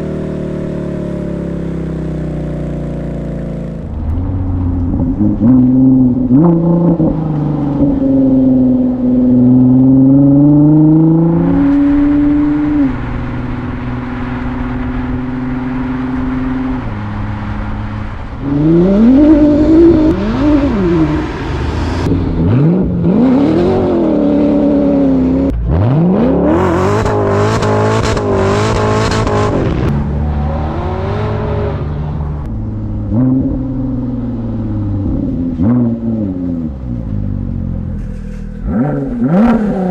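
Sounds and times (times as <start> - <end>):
sports car exhaust revving: 0.0 - 39.9.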